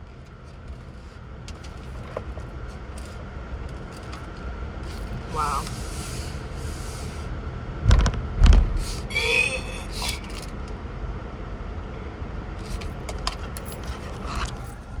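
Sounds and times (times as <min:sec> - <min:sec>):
steady low rumble: 0:07.2 - 0:09.9.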